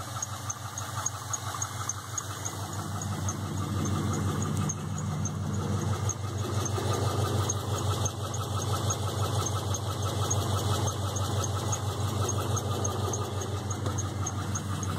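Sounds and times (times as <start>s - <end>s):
car engine idling: 0.0s - 14.9s
engine knocking tick: 0.0s - 14.9s.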